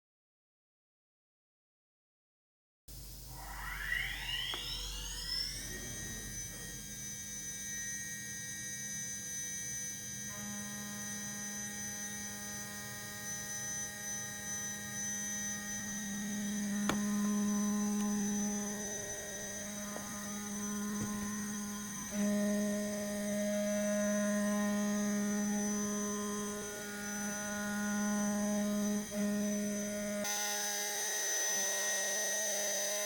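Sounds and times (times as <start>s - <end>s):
machine spindle whine: 2.9s - 33.0s
steady tones: 14.7s - 30.3s.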